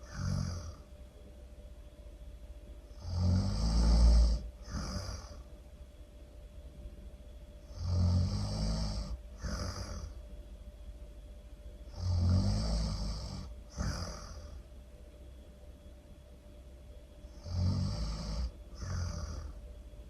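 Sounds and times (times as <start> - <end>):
person snoring: 0.0 - 0.8, 2.9 - 5.5, 7.6 - 10.2, 11.9 - 14.6, 17.3 - 19.6.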